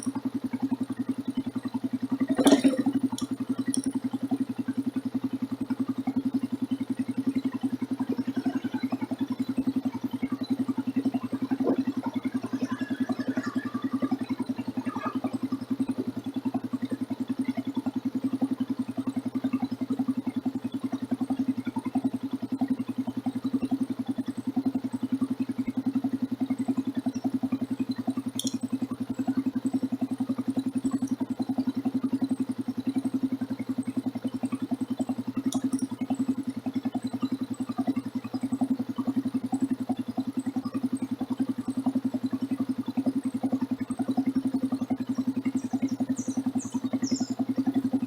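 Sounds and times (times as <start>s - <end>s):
motorcycle engine running: 0.0s - 48.0s
sharp clicks: 28.4s - 28.6s.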